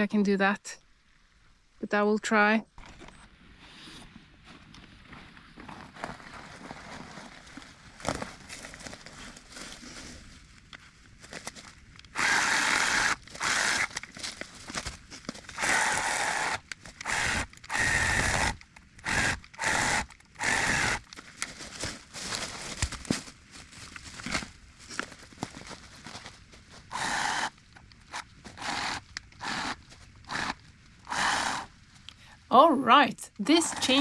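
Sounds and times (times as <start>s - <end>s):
electric chainsaw chewing branch: 12.1s - 14.2s, 15.4s - 21.2s, 26.9s - 31.7s, 33.5s - 34.0s.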